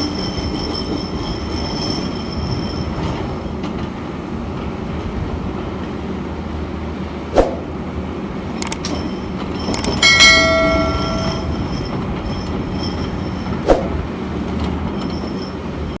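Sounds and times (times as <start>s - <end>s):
excavator diesel engine running: 1.3s - 16.0s
loud metallic clang: 9.7s - 14.0s.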